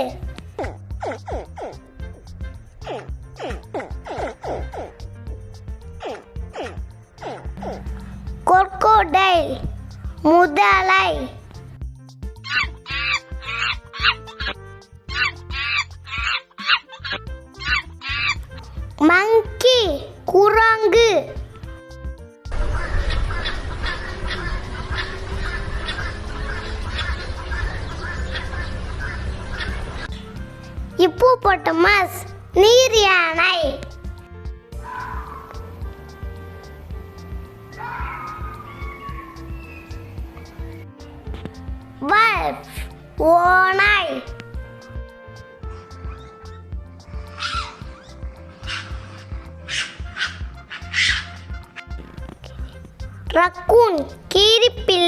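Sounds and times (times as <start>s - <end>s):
background music with beat: 0.0s - 10.4s, 11.2s - 19.1s, 30.0s - 31.6s, 33.6s - 55.0s
monkey chattering calls: 12.4s - 18.4s, 22.5s - 30.2s, 34.8s - 35.7s, 37.8s - 40.1s, 47.3s - 52.0s.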